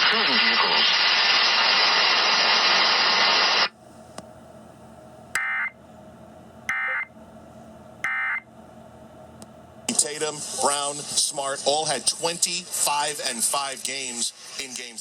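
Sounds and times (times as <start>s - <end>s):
radio reception hiss: 0.0s - 3.7s, 9.9s - 15.0s.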